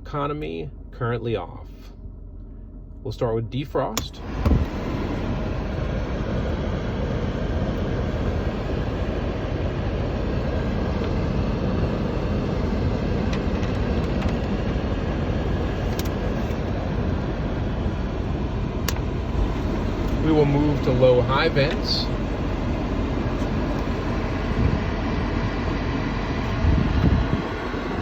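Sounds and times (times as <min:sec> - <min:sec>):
car blower rushing air: 0:04.0 - 0:28.0
vent flaps clicking: 0:13.2 - 0:14.8.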